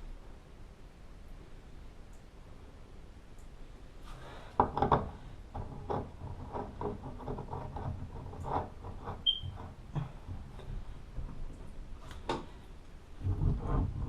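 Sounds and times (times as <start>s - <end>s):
small parts knocking and scraping: 4.5s - 12.6s
short high squeak: 9.2s - 9.6s.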